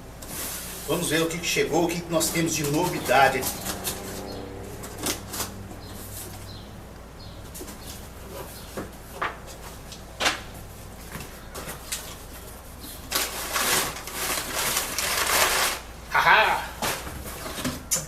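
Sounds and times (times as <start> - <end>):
packaging rustling or tearing: 11.6 - 15.9.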